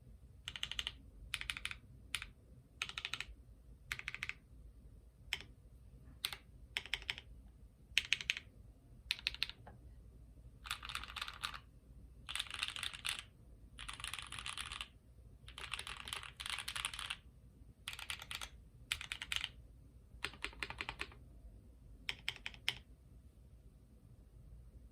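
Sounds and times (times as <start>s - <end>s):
mechanical keyboard typing: 0.5s - 3.3s, 3.9s - 4.4s, 5.3s - 5.5s, 6.2s - 7.3s, 8.0s - 8.5s, 9.1s - 9.7s, 10.6s - 11.6s, 12.3s - 14.9s, 15.5s - 17.2s, 17.9s - 19.6s, 20.2s - 21.2s, 22.1s - 22.9s.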